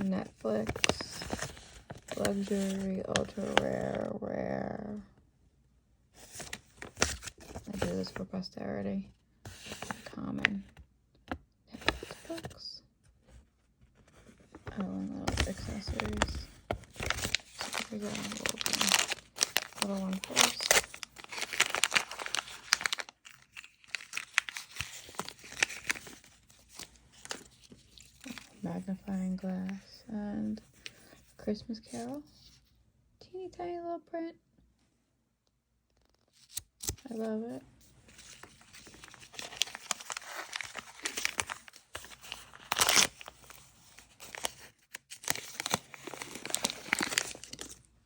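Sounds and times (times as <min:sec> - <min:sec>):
plastic package tearing and crinkling: 0:00.6 - 0:03.6, 0:14.7 - 0:28.6, 0:38.1 - 0:47.9
plastic ripping: 0:14.8 - 0:28.6, 0:38.2 - 0:47.8.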